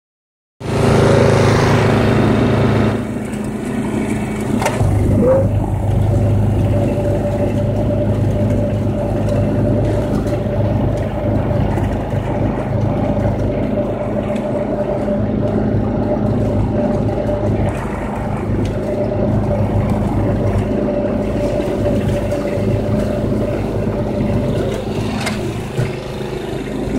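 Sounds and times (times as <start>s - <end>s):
lawn mower engine running: 0.6s - 26.9s.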